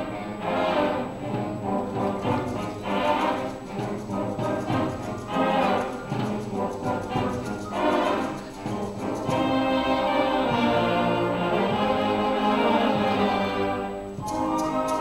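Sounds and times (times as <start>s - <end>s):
concert band playing a mambo: 1.4s - 10.8s, 14.2s - 15.0s.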